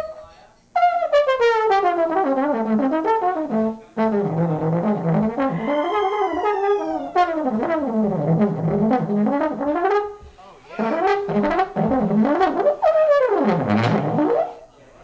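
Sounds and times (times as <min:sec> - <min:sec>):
saxophone and trombone runs: 0:00.8 - 0:14.6
bass and drums: 0:11.2 - 0:12.6.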